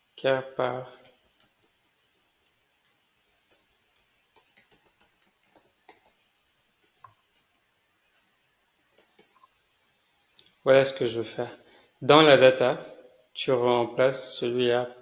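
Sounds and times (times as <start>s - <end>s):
faint keyboard typing: 0.7s - 9.6s.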